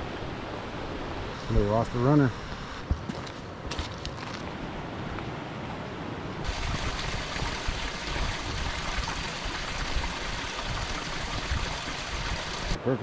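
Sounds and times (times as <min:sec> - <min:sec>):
river water rushing: 0:04.5 - 0:12.8.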